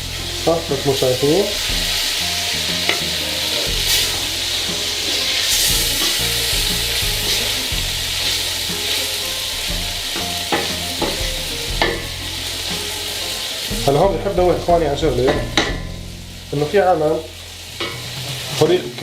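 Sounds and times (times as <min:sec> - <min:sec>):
food sizzling in a pan: 0:00.0 - 0:19.0
spoon knocking against pan: 0:09.6 - 0:12.2, 0:15.3 - 0:16.1.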